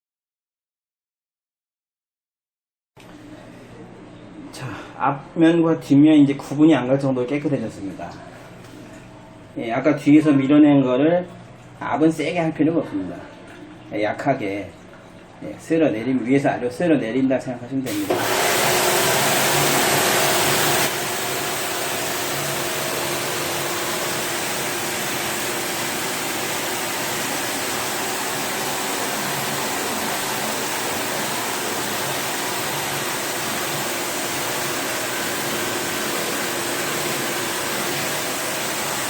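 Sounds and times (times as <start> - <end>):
water spray hissing on coil: 17.9 - 39.0.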